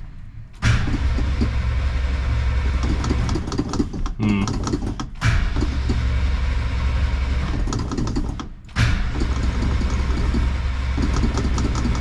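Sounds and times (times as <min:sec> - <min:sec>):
car engine running: 0:08.9 - 0:12.0.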